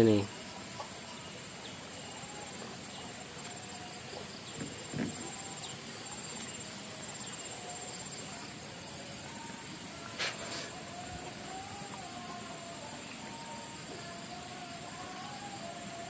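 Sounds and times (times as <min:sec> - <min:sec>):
insect trilling: 0:00.0 - 0:16.0
steady hiss: 0:00.0 - 0:16.0.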